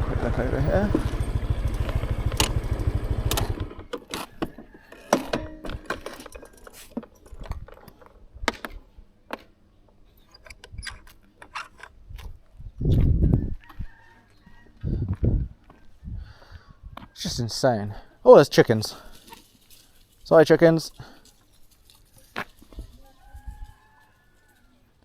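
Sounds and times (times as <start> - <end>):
motorbike engine idling: 0.0 - 4.0.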